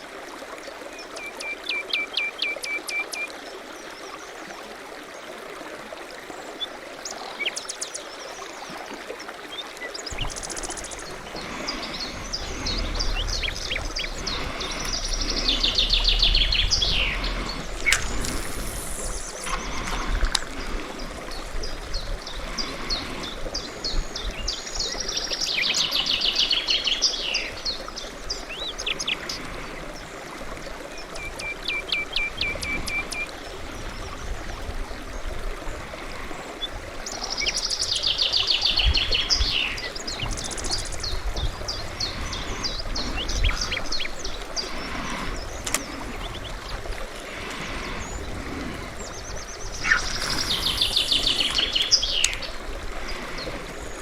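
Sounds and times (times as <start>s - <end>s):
bird trill: 10.1s - 20.0s
bird high song phrase: 10.1s - 20.1s, 49.7s - 52.6s.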